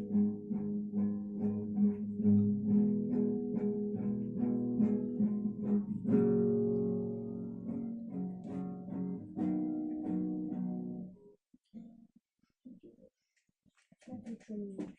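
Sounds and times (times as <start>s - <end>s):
strummed acoustic guitar: 0.0s - 11.2s.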